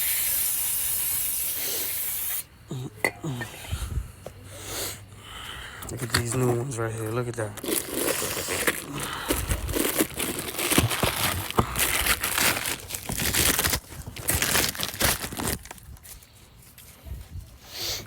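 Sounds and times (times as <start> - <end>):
plastic packaging crinkling: 6.0 - 16.3.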